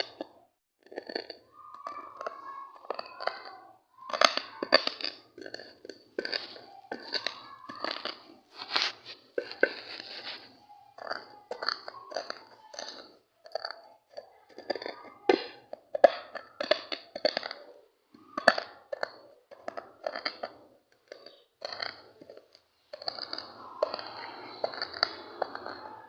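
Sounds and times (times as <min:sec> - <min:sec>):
seeds crunching by hand: 0:04.0 - 0:13.0.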